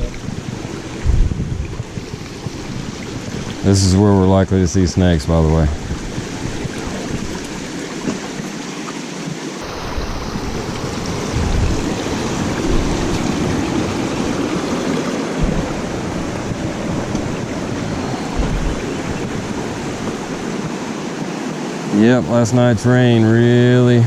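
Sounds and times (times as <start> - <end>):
low thumps: 0.0 - 3.7, 5.6 - 8.4, 9.8 - 20.8
creek water rushing: 0.0 - 24.0.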